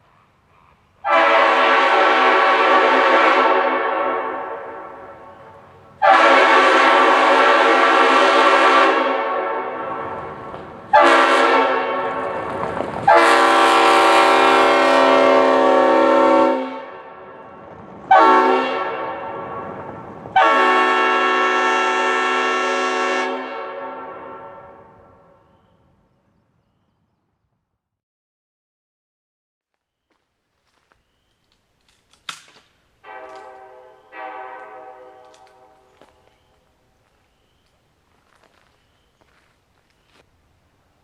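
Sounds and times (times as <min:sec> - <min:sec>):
train air horn blasts: 0:01.0 - 0:25.8, 0:33.0 - 0:36.4.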